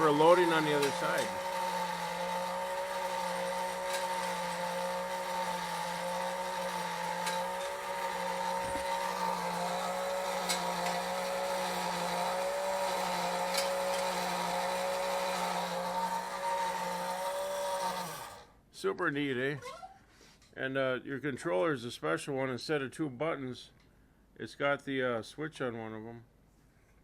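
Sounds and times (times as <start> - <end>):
chain conveyor: 0.0 - 18.5
toy electric motor running: 0.0 - 18.5.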